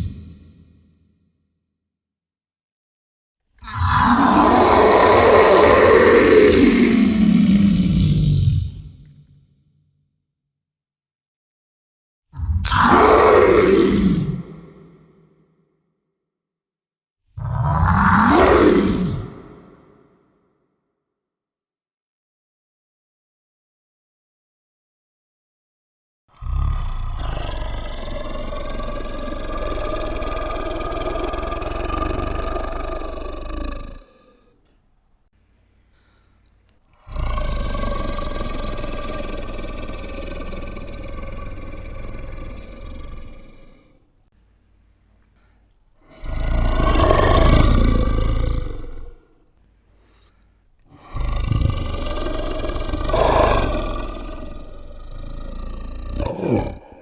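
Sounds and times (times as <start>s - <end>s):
deep monster roar: 3.6s - 9.2s, 12.4s - 15.3s, 17.4s - 20.3s, 26.3s - 34.8s, 36.9s - 44.3s, 45.4s - 57.0s.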